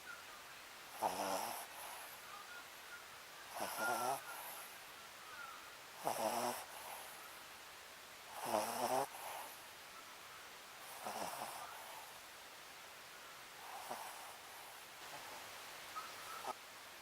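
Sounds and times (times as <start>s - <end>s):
dog snoring: 0.9s - 2.2s, 3.5s - 4.7s, 6.0s - 7.1s, 8.3s - 9.6s, 10.8s - 12.1s, 13.6s - 14.5s.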